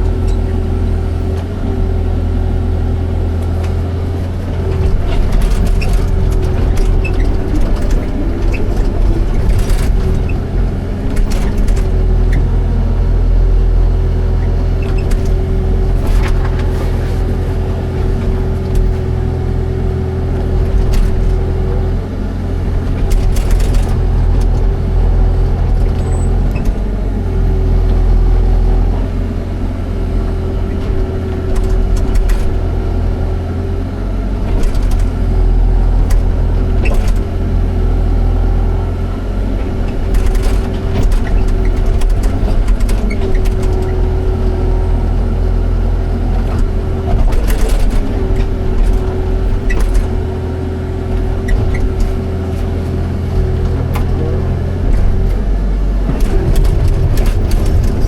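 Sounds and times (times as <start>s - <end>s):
excavator diesel engine droning: 0.0s - 58.0s
machine knocks and scrapes: 51.1s - 58.0s.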